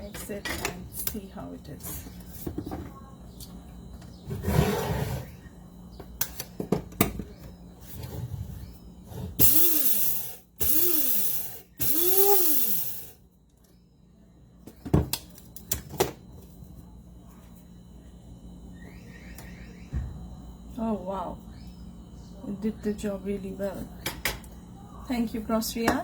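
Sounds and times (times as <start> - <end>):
electric blade grinder whirring: 9.4 - 13.2.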